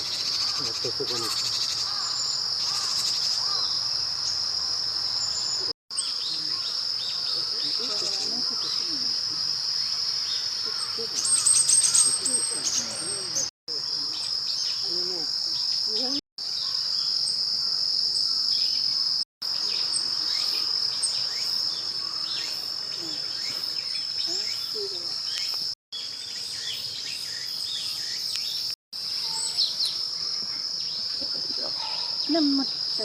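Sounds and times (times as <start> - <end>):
short high insect chirps: 0.0 - 7.4, 8.0 - 13.5
crickets trilling: 0.0 - 33.0.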